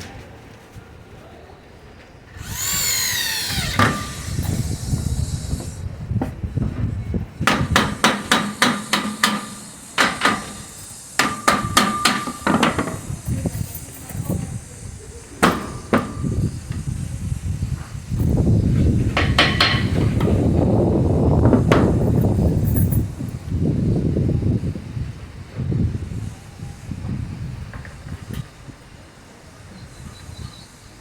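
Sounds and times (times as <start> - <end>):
hammer strikes: 7.5 - 13.0.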